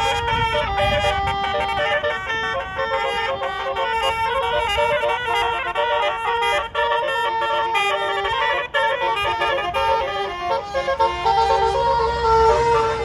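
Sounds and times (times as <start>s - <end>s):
bus horn melody: 0.0s - 13.0s.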